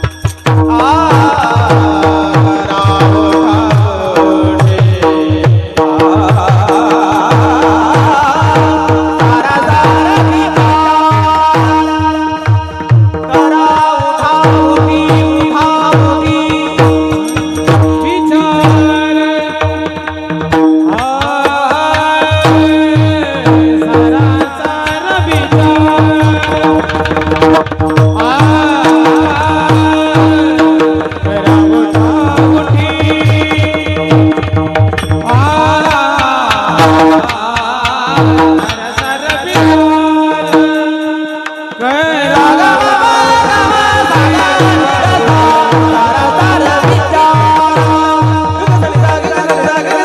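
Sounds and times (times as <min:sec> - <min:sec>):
hand drum beating: 0:00.0 - 0:50.0
held accompanying notes: 0:00.0 - 0:50.0
person singing: 0:00.0 - 0:50.0.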